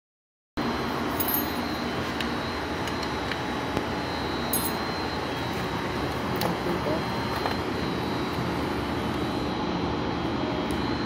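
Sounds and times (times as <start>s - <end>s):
high whine: 0.6s - 11.0s
machine running: 0.6s - 11.0s.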